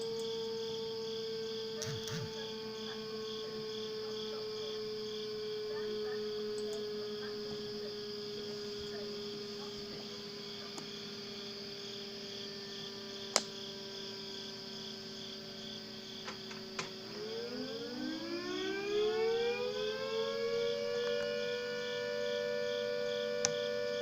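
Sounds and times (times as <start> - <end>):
low hum: 1.6 - 12.9
two-tone siren winding up: 1.7 - 3.5, 17.1 - 24.0
sharp clicks: 1.8 - 2.4.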